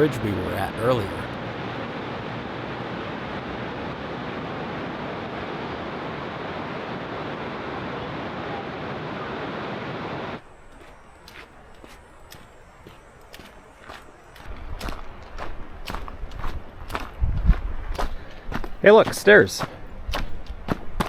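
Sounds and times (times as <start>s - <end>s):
waterfall rushing: 0.0s - 1.3s
footsteps on trail: 10.6s - 21.0s.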